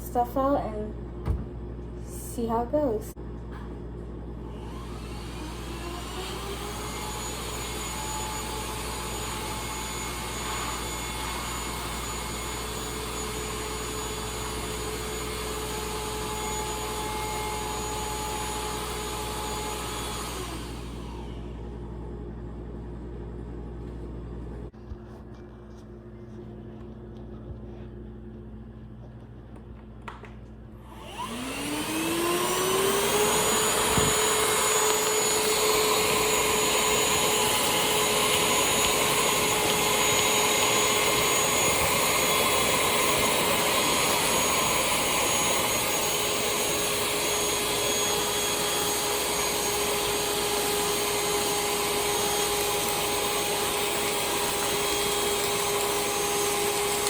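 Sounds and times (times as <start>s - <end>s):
handheld vacuum whining: 4.4s - 22.3s, 30.8s - 57.0s.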